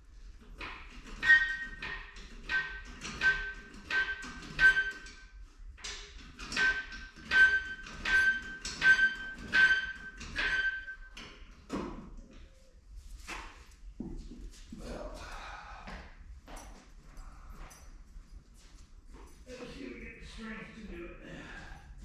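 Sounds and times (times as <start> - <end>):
floor jack squeaking: 0.6 - 5.1, 6.1 - 11.2.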